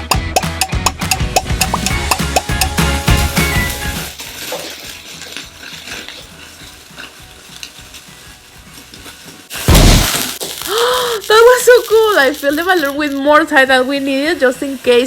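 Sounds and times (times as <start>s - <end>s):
firework fizzing and crackling: 9.4s - 15.0s
balloon bursting bang: 9.6s - 10.6s.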